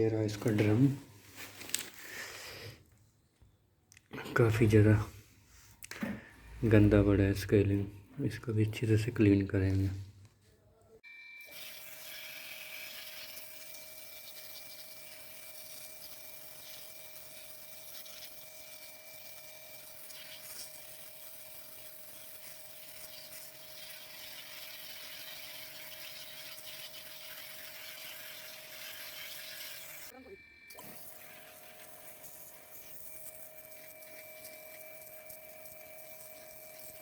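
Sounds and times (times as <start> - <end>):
pressure washer spraying: 11.5 - 30.1, 30.8 - 37.0.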